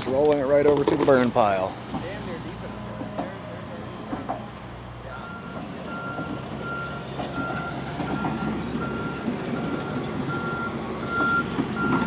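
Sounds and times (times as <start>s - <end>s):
excavator diesel engine running: 0.0s - 12.0s
travel alarm beeping: 5.1s - 12.0s.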